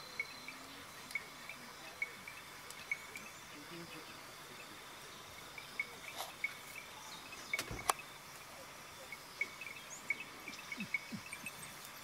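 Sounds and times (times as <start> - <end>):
insects chirping: 0.0 - 12.0
sharp clicks: 7.5 - 8.0.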